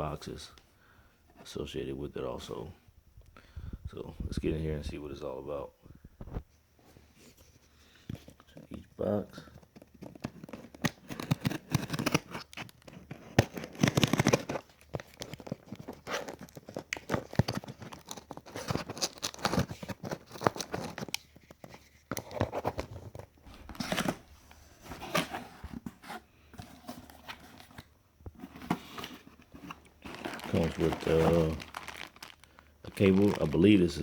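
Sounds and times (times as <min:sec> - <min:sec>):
packaging rustling and tearing: 0:09.5 - 0:34.0.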